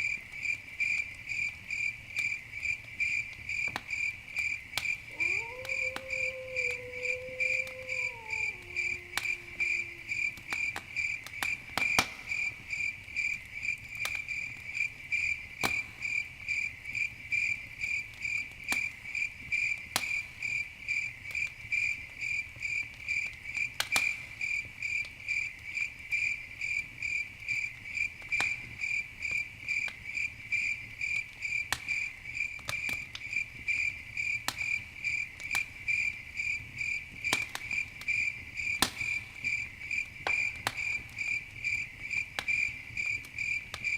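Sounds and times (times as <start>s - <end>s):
campfire pops and crackles: 0.0s - 43.9s
cricket chirping: 0.0s - 43.9s.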